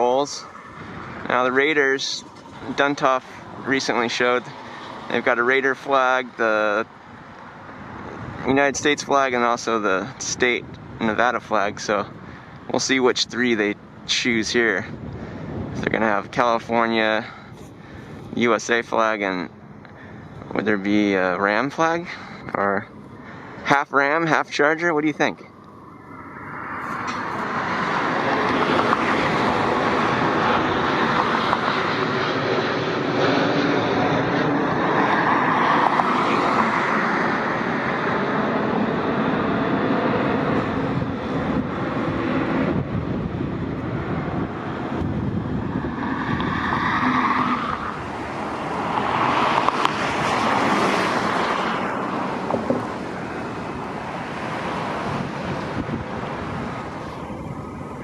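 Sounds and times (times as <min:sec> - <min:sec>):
roar of passing vehicles: 0:00.0 - 0:08.6, 0:17.2 - 0:18.4, 0:25.4 - 0:58.0.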